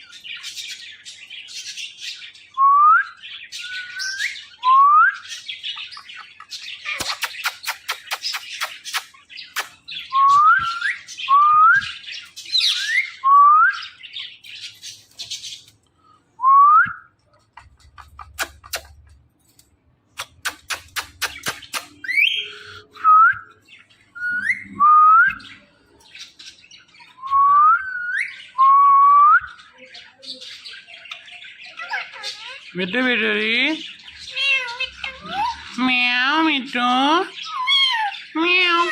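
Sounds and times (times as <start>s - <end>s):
parrot whistling upward notes: 24.2s - 25.6s.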